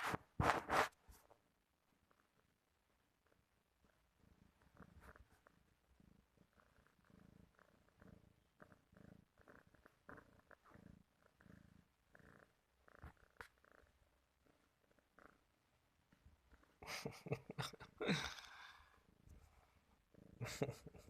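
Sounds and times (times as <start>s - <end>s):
cat purring: 0.0s - 21.0s.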